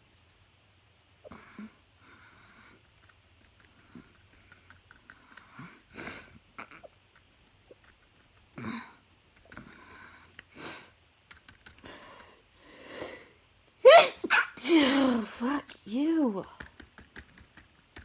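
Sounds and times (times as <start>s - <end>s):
faint clicks: 2.8s - 5.5s
person sniffing: 11.9s - 13.3s, 13.9s - 15.3s.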